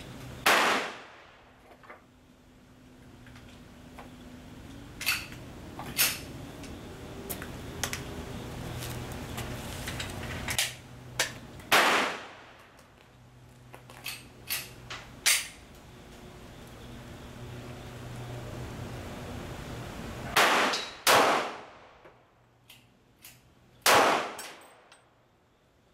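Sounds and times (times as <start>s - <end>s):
low steady hum: 0.0s - 25.9s
pistol shots: 0.4s - 1.4s, 11.7s - 12.5s, 20.4s - 21.8s, 23.8s - 24.7s.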